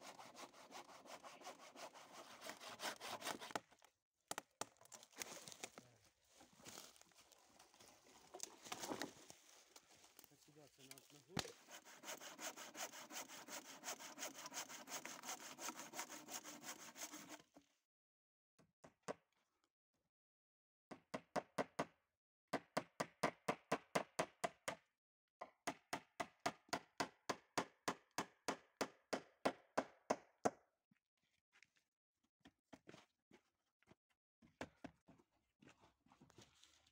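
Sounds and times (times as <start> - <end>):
hand saw cutting wood: 0.0 - 3.8, 10.9 - 17.6.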